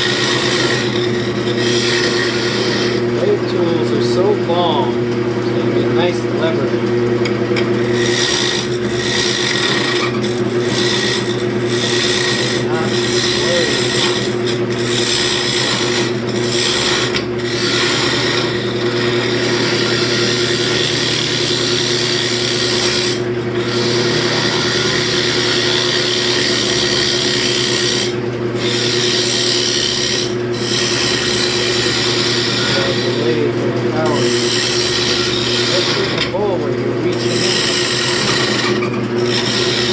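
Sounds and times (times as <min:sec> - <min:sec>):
turning tool scraping wood: 0:00.0 - 0:04.9, 0:07.6 - 0:39.9
lathe motor hum: 0:00.0 - 0:39.9.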